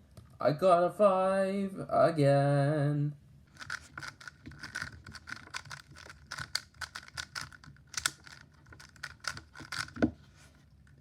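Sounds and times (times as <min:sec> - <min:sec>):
puzzle cube plastic clicking: 0:03.5 - 0:10.2.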